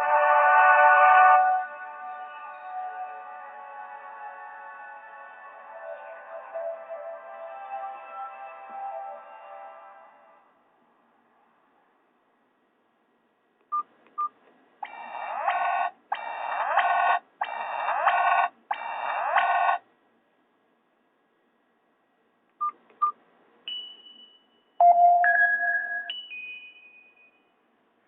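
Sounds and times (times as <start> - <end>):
phone ringtone: 23.7 - 27.5.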